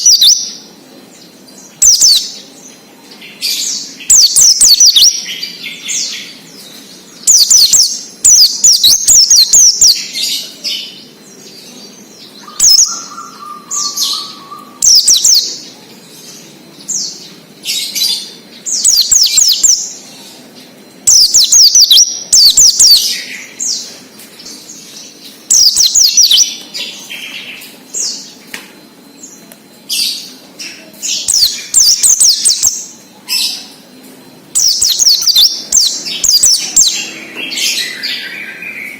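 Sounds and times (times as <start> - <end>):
bird singing falling twitters: 1.2 - 38.9.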